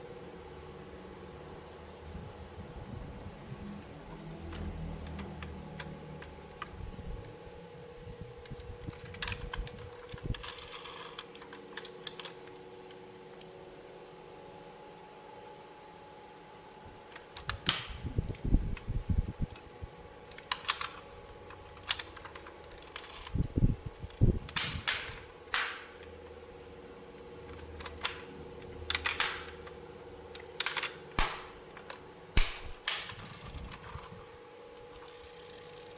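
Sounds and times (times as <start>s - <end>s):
faint steady hum: 0.0s - 35.9s.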